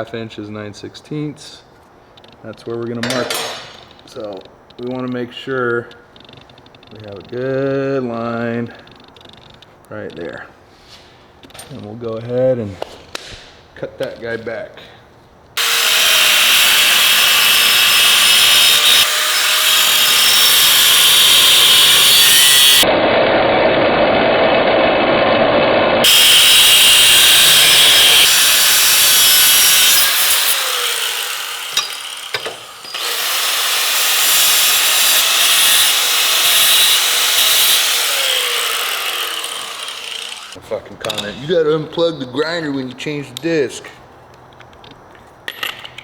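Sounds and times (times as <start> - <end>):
angle grinder cutting steel: 15.6 - 22.9, 26.0 - 40.6.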